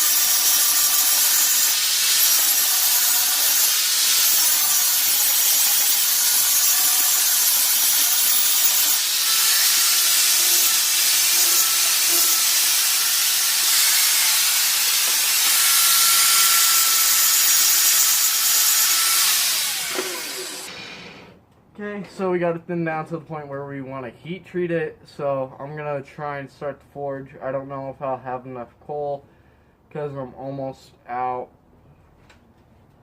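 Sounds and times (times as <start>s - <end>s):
power grinder grinding steel: 0.0s - 21.4s.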